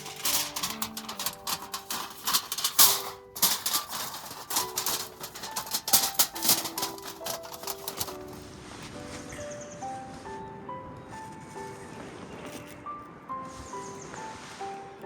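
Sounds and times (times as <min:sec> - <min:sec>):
simple melody background music: 0:01.9 - 0:15.0.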